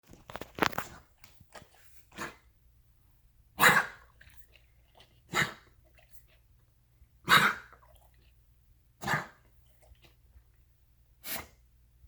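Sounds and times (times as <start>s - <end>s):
dog coughing: 3.6s - 4.1s, 5.3s - 5.7s, 7.2s - 7.9s, 9.0s - 9.4s.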